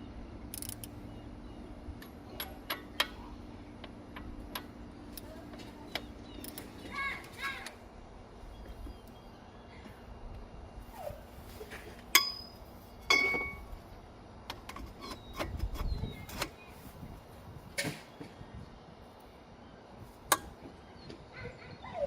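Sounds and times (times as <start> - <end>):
metal tools clinking: 12.1 - 13.7.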